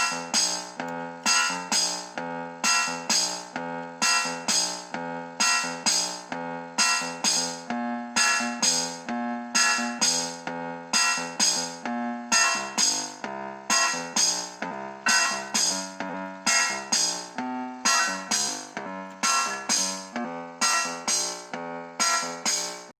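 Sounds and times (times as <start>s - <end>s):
electronic keyboard notes and chords: 0.0s - 22.9s.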